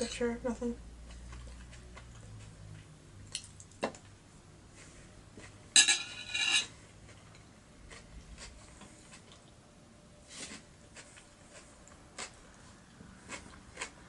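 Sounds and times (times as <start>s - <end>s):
cutlery scraping with ringing tone: 5.8s - 6.7s.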